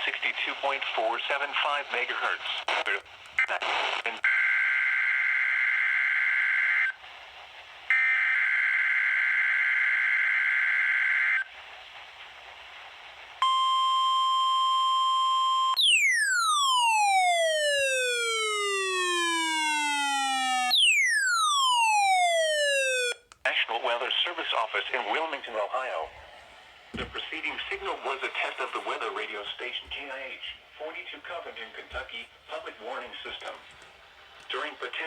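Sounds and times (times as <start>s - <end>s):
steady warning alarm tone: 15.7s - 23.2s.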